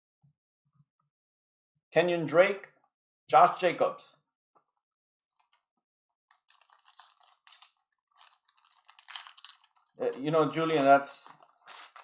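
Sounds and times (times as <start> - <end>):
foil wrapper crinkling: 6.3 - 12.0.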